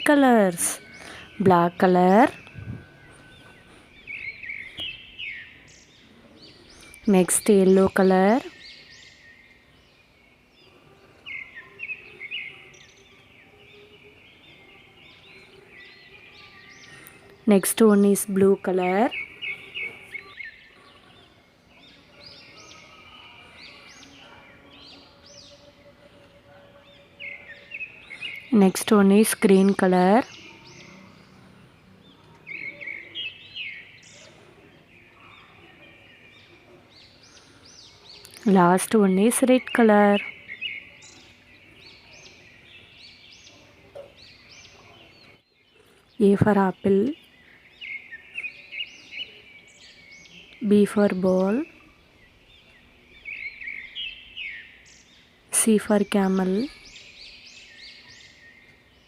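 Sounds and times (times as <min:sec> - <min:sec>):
birds chirping: 0:00.0 - 0:59.0.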